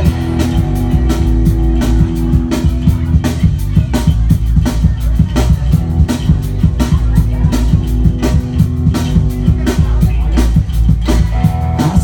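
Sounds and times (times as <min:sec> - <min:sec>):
drums keeping steady beat: 0:00.0 - 0:12.0
electric guitar and bass chords: 0:00.0 - 0:12.0.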